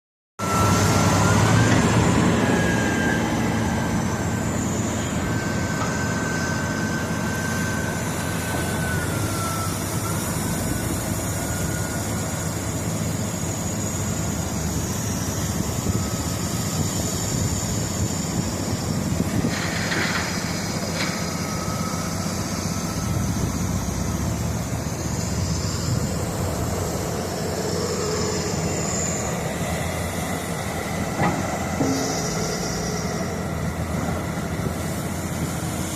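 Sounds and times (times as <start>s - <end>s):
construction machine engine running: 0.4s - 35.9s
thin high whine: 21.3s - 35.9s.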